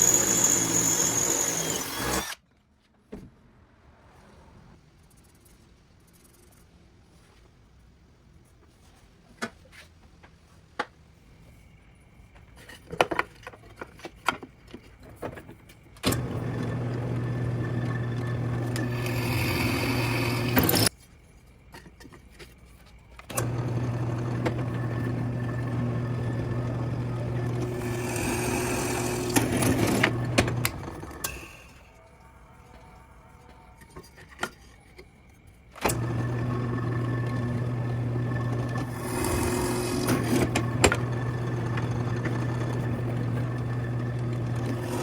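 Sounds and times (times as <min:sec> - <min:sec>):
power tool motor running: 0:00.0 - 0:02.4, 0:16.1 - 0:20.9, 0:23.3 - 0:31.8, 0:35.8 - 0:45.0.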